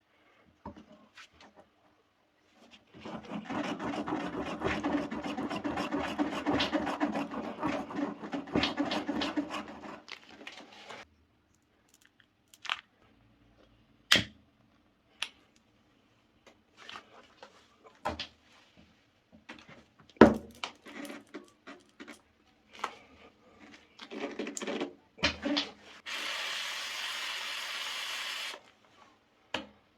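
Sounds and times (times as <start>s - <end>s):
reamer tool scraping: 3.0s - 11.0s.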